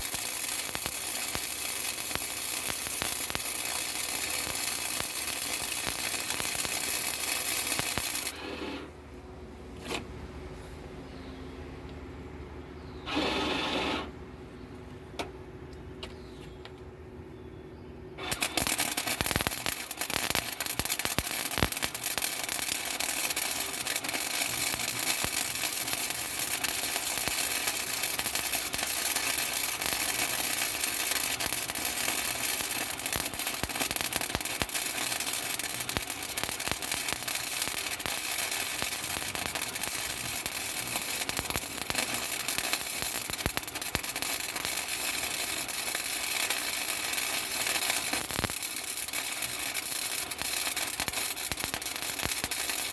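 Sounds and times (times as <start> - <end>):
electric arc welding crackle: 0.0 - 8.4, 18.2 - 52.9.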